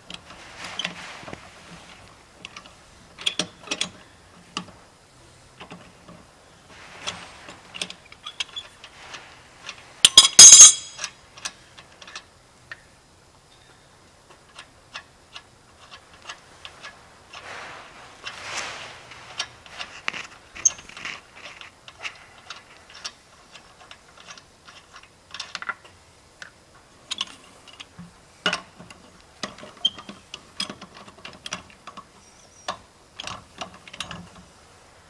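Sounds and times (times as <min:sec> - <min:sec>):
lug nuts clinking: 0:09.7 - 0:12.9.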